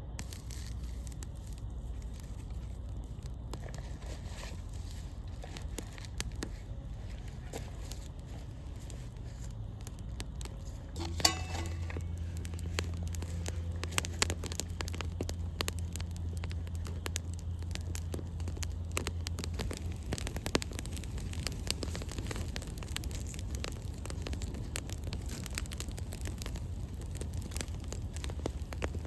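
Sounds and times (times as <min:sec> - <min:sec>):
campfire crackling and popping: 0:00.0 - 0:29.0
steady low hum: 0:00.0 - 0:29.0.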